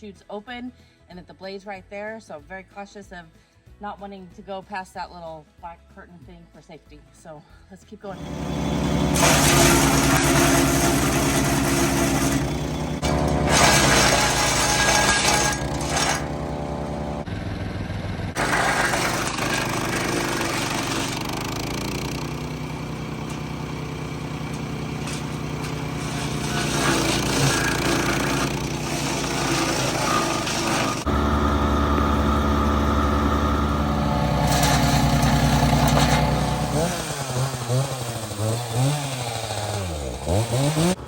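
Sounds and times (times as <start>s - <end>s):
branches crunching in chipper: 8.2s - 17.3s, 18.3s - 41.0s
wood chipper engine running: 8.2s - 41.0s.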